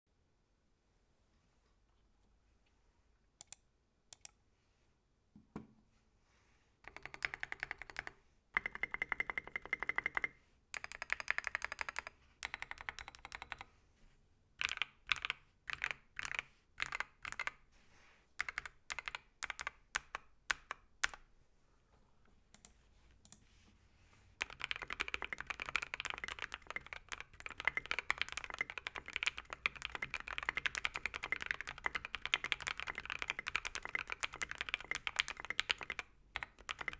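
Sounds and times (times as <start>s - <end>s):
mechanical keyboard typing: 6.9s - 13.7s, 14.6s - 17.6s, 18.4s - 21.2s, 24.4s - 36.9s.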